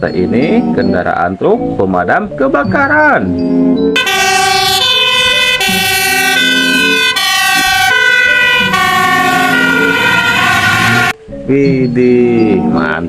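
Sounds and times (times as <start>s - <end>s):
electronic fire truck siren: 4.0s - 11.2s.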